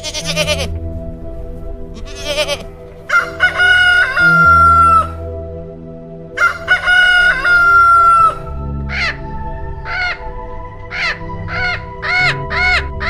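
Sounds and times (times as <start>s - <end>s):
soft background music: 0.0s - 13.0s
rooster crowing: 2.1s - 5.2s, 6.4s - 9.2s.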